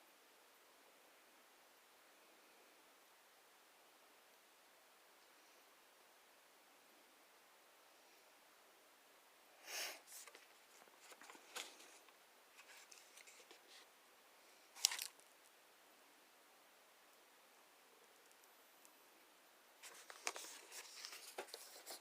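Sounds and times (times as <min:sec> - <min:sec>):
packaging clicks and rustles: 0:10.2 - 0:13.6, 0:14.8 - 0:15.3, 0:19.8 - 0:22.0
packaging scraping: 0:14.8 - 0:15.2.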